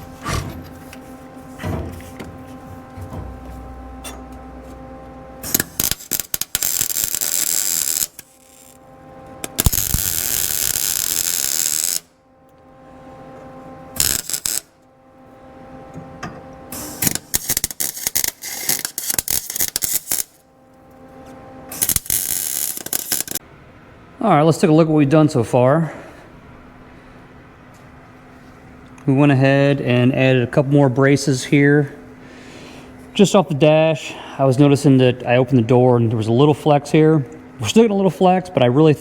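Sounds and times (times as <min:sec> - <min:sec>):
steady electrical hum: 0:00.0 - 0:39.0
welder arc crackling: 0:05.4 - 0:12.2, 0:13.9 - 0:14.8, 0:16.7 - 0:20.4, 0:21.7 - 0:23.4.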